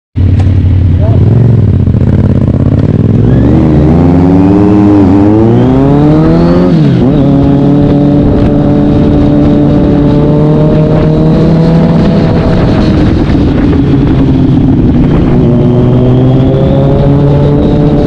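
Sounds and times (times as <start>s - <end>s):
motorcycle engine accelerating: 0.2s - 18.0s.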